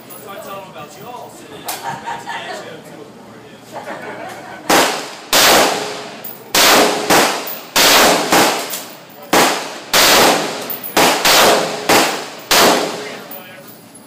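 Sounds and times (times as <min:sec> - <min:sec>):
gunshots with echo: 0:04.7 - 0:13.3.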